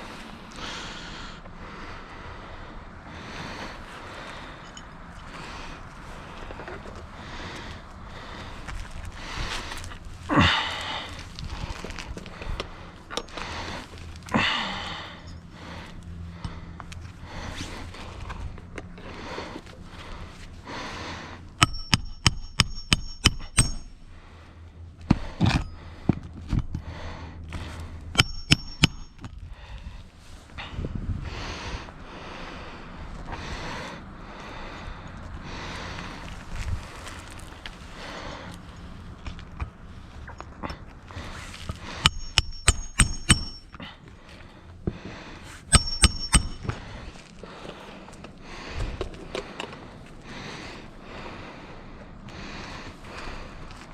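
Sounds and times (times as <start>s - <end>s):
hammer striking nails: 21.6s - 24.0s, 28.2s - 29.3s, 41.7s - 43.8s, 45.7s - 46.8s.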